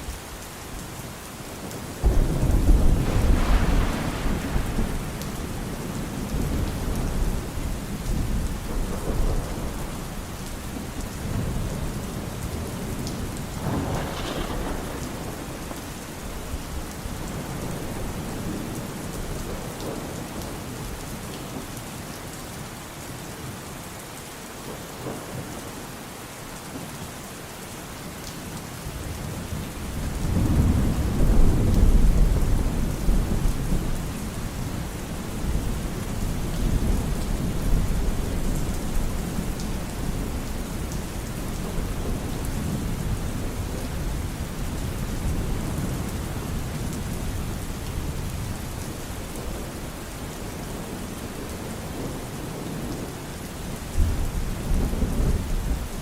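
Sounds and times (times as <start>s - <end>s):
rain falling: 0.0s - 56.0s
rolling thunder: 2.0s - 10.4s, 11.2s - 20.1s, 29.8s - 49.6s.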